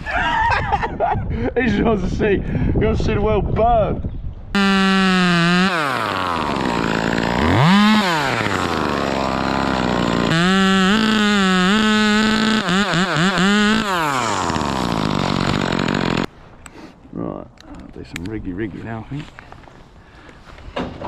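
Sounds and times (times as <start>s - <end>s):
chainsaw engine revving: 4.6s - 16.3s.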